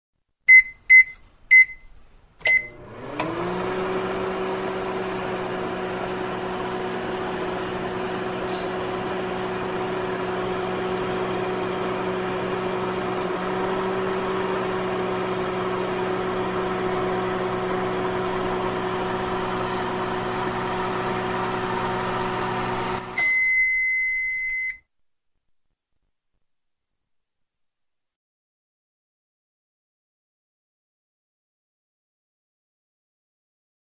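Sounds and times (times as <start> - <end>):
microwave keypad beeps: 0.5 - 2.8, 23.2 - 24.8
long microwave beep: 0.5 - 2.9, 23.1 - 24.9
microwave humming: 2.4 - 24.8.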